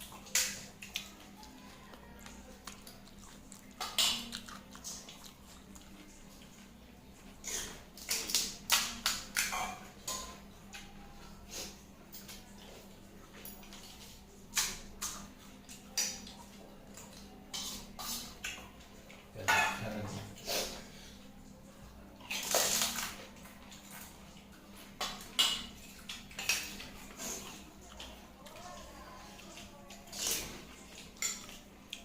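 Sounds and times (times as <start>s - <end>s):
crunching food: 0.0s - 6.6s
dishes clinking: 19.4s - 20.1s.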